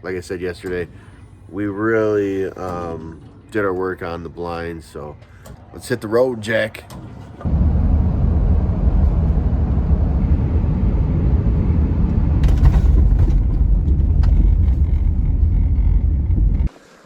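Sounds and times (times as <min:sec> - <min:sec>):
road and engine rumble inside car: 0:07.4 - 0:16.7.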